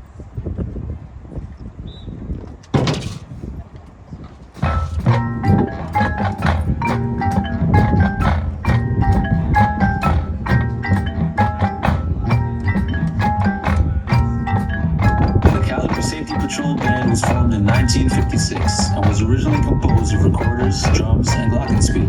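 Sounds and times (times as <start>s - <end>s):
mallet percussion run: 4.6s - 22.0s
marching show band music: 4.6s - 22.0s.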